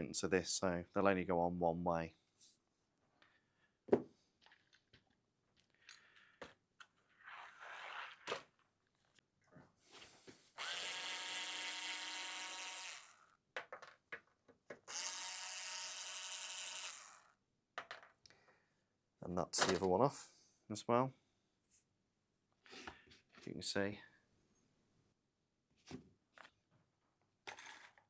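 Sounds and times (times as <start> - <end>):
electric screwdriver running: 10.6 - 13.3, 14.9 - 17.3.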